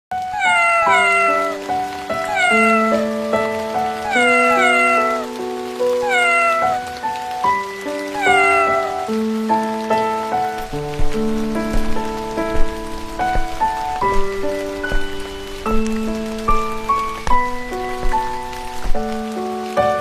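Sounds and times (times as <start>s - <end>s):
kitten meowing: 0.2s - 3.2s, 3.9s - 5.3s, 6.0s - 7.0s, 8.0s - 9.1s, 10.6s - 19.2s
background music with held notes: 0.2s - 20.0s.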